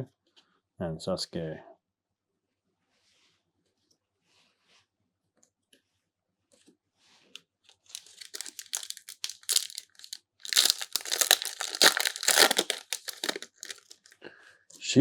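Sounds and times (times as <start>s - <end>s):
wrapper crinkling: 7.9s - 14.2s.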